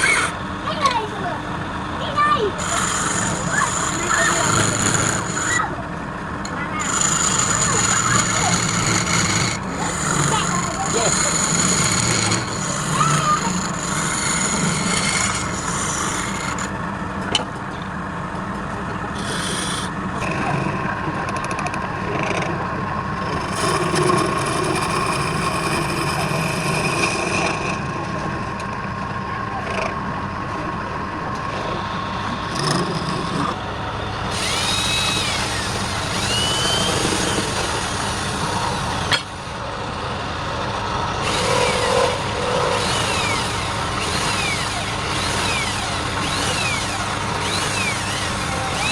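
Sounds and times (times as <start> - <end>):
turning tool rasping on spinning wood: 0.0 - 0.4, 2.2 - 5.8, 6.6 - 16.8, 19.1 - 20.4, 23.2 - 28.2, 32.3 - 33.6, 34.2 - 39.6, 41.2 - 48.9
faint lathe motor whine: 0.0 - 48.9.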